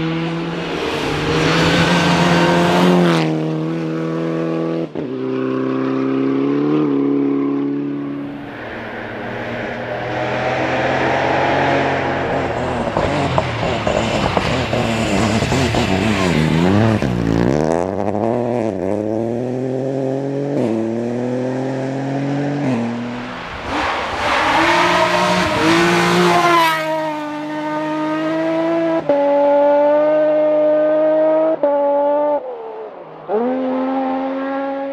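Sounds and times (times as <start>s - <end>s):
rally car engine revving: 0.0s - 34.9s.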